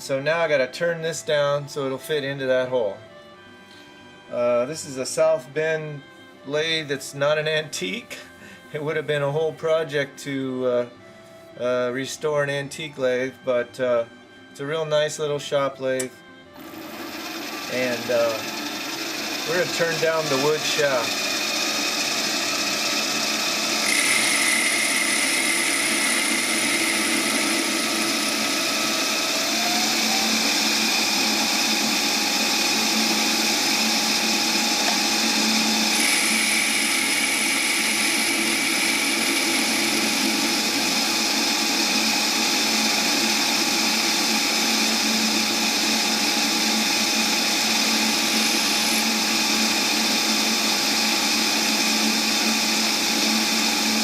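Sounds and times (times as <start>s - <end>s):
high-pitched whine: 16.6s - 54.0s
lathe running: 16.6s - 54.0s.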